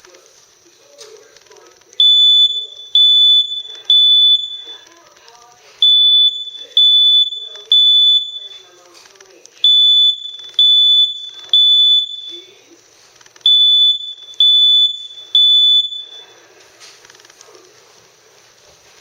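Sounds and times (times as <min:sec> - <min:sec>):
smoke alarm beeping: 0:00.0 - 0:08.9, 0:09.5 - 0:17.3.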